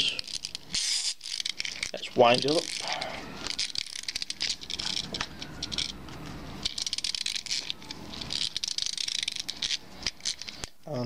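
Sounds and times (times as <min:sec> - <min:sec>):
ratchet clicking of wind-up toy: 0:00.0 - 0:10.8.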